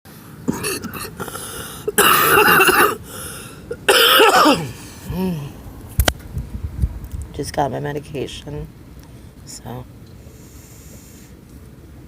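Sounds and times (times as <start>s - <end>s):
person coughing: 0.5s - 3.0s, 3.7s - 5.3s.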